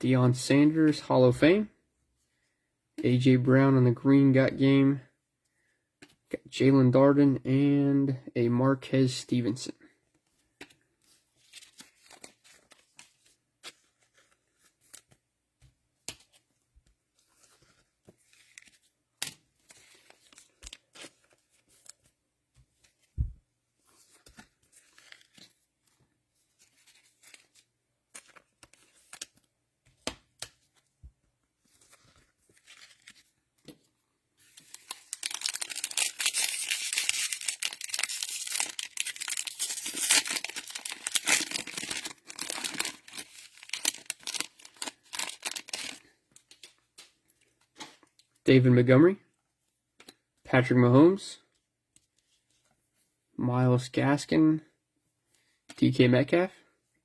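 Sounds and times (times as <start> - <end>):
trading cards clicking and rustling: 26.6 - 30.8, 34.5 - 48.1
cellophane crinkling and tearing: 34.4 - 46.8.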